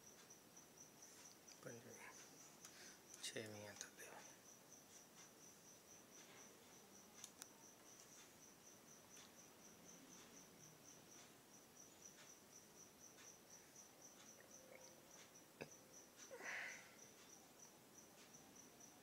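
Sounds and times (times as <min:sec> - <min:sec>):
cricket chirping: 0:00.0 - 0:19.0
faint clicks: 0:07.1 - 0:08.3.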